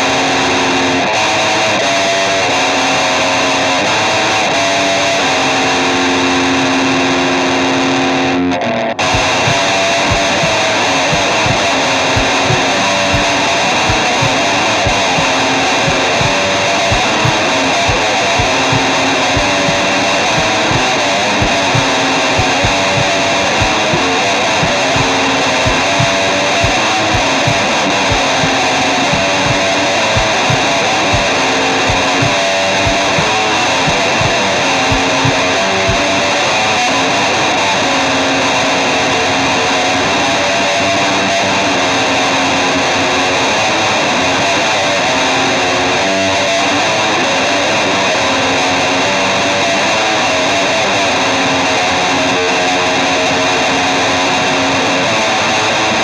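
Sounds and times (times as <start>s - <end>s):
distorted electric guitar: 0.0s - 56.0s
low drum beat: 9.1s - 13.3s, 13.9s - 15.3s, 15.9s - 36.1s.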